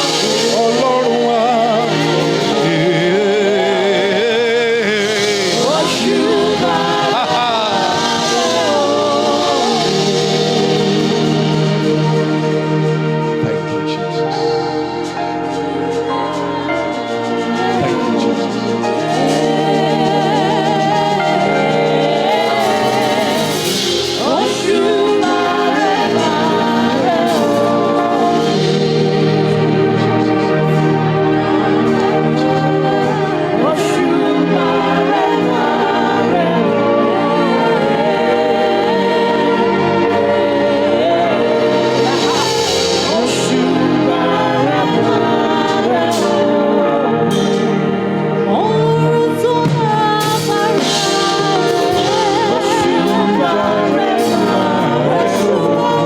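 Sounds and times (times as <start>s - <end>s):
gospel singing voices: 0.0s - 56.0s
musical accompaniment: 0.0s - 56.0s.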